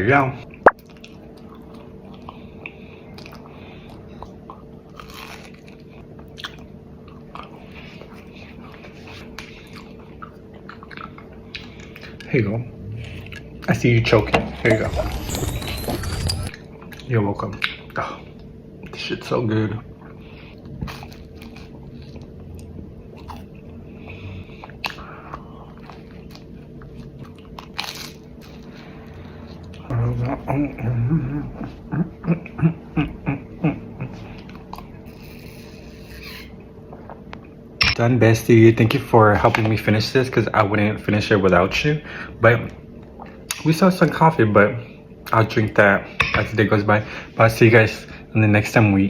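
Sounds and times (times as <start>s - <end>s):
chewing and biting toast: 0.9s - 12.3s, 20.8s - 23.7s, 25.7s - 28.7s.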